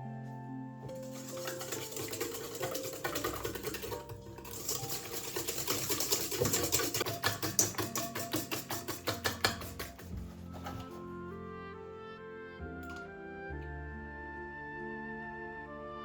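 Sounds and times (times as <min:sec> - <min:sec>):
soft background music: 0:00.0 - 0:16.0
utensil clicking in a bowl: 0:00.9 - 0:10.9.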